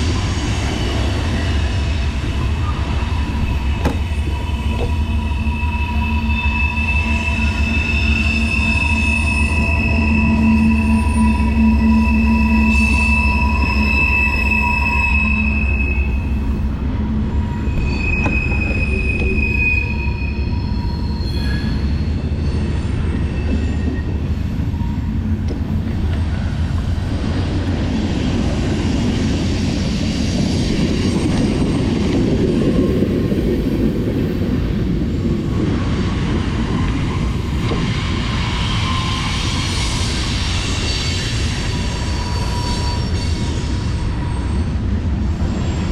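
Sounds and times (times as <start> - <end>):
sharp high-pitched squeals: 2.5 - 25.9, 36.7 - 45.9
wind rumble on microphone: 22.0 - 45.9.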